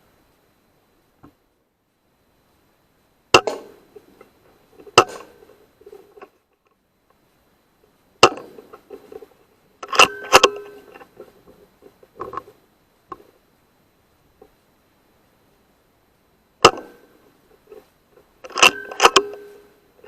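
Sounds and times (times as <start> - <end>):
air rifle clicks and knocks: 8.2 - 11.2, 16.6 - 17.0, 18.4 - 19.5
brief metallic ring: 18.6 - 19.7.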